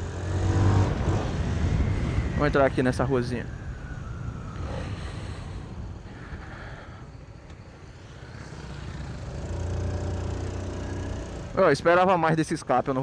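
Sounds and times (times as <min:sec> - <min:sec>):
motorcycle engine running: 0:08.1 - 0:11.8.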